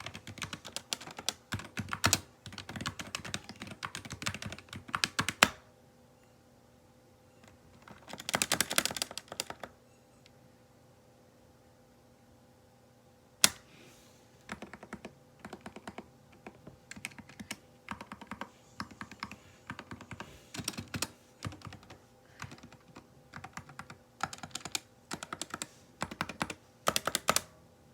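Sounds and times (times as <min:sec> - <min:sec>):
mechanical keyboard typing: 0:00.0 - 0:05.6, 0:07.7 - 0:09.8, 0:14.5 - 0:27.5.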